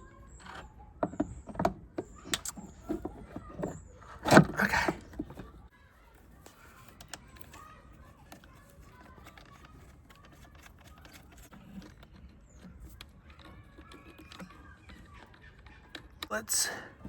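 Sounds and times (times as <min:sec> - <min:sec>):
metal parts clicking and tapping: 0:06.4 - 0:16.3.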